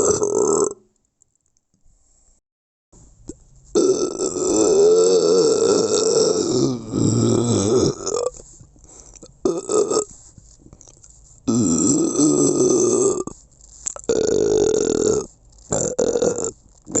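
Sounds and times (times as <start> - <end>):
person belching: 0.0 - 0.8, 3.8 - 8.3, 9.4 - 10.1, 11.5 - 13.3, 14.0 - 17.0.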